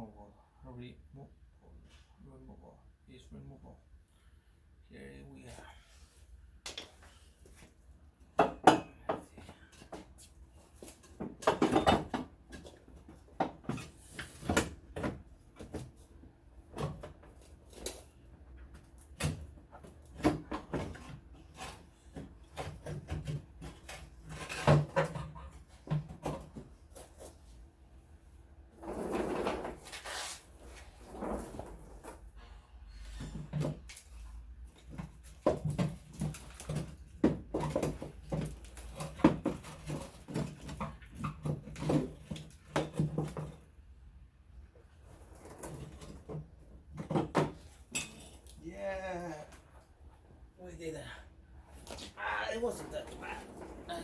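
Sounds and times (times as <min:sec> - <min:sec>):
scraping rustle: 0:28.8 - 0:32.2.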